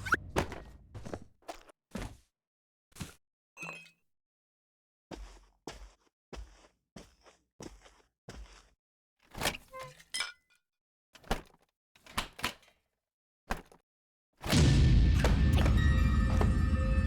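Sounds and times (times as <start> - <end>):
loud music: 14.5 - 17.0
sharp hits: 14.5 - 17.0.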